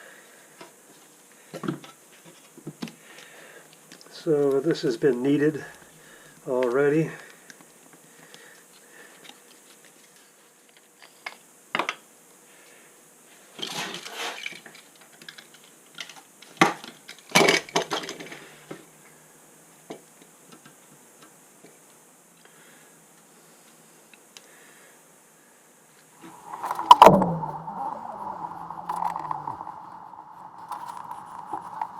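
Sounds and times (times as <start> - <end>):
rustling and scraping: 13.6 - 14.9, 26.2 - 31.9.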